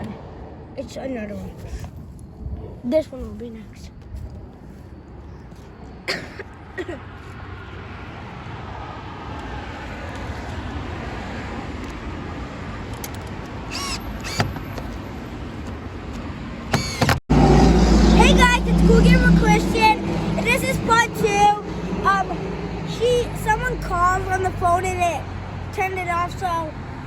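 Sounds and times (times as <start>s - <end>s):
car approaching: 6.7s - 27.0s.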